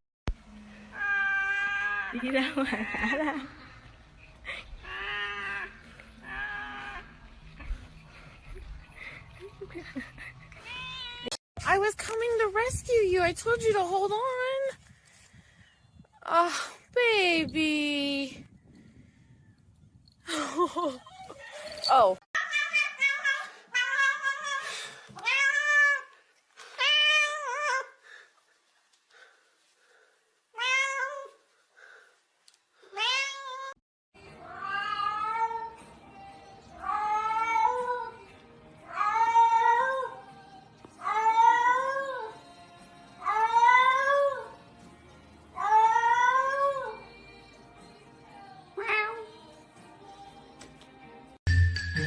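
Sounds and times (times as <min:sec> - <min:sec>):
cat meowing: 0:10.6 - 0:11.4
cat yowling: 0:22.4 - 0:24.6, 0:45.6 - 0:47.0.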